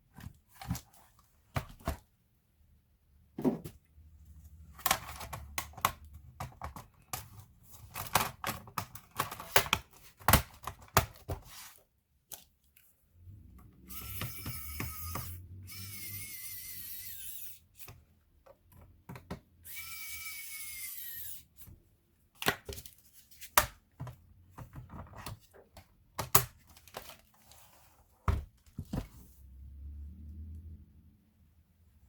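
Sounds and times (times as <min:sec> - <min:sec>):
small motor whirring: 0:13.9 - 0:17.6, 0:19.6 - 0:21.4.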